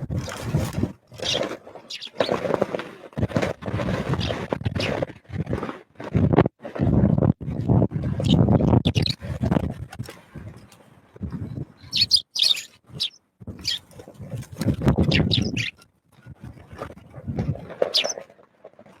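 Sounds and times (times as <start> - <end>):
small birds chirping: 1.2 - 2.4, 4.2 - 5.0, 8.2 - 9.2, 11.8 - 13.9, 15.0 - 15.8, 17.9 - 18.2
wind buffeting microphone: 3.2 - 17.8.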